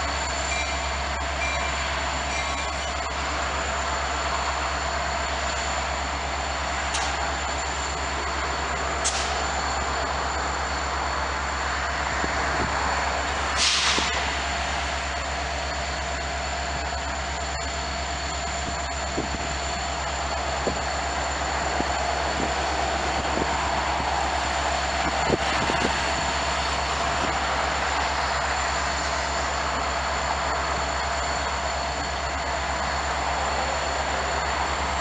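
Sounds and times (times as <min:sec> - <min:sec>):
train running on rails: 0:00.0 - 0:35.0
sharp hiss: 0:13.5 - 0:15.0.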